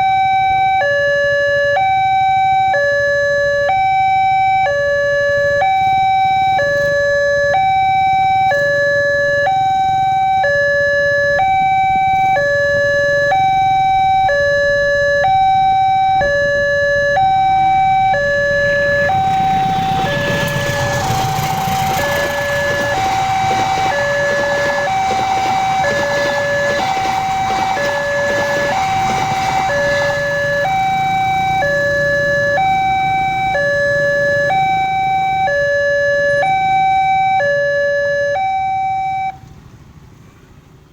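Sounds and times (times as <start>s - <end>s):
level crossing two-tone siren: 0.0s - 39.4s
passing train rumbling: 16.2s - 35.7s.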